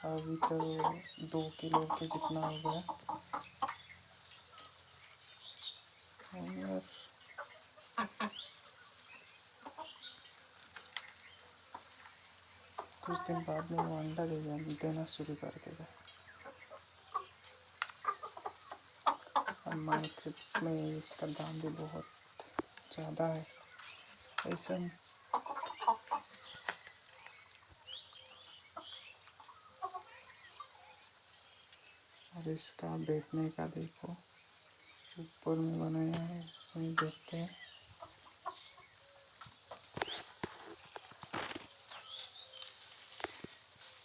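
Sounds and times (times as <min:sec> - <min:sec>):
chickens clucking: 0:00.0 - 0:44.0
crickets droning: 0:00.0 - 0:44.0.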